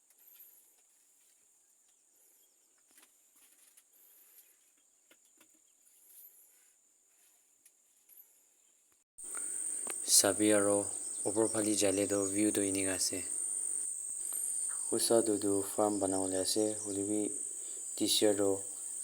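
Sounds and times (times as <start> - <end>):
faint chirps: 9.2 - 19.0
high-pitched insect drone: 9.2 - 19.0.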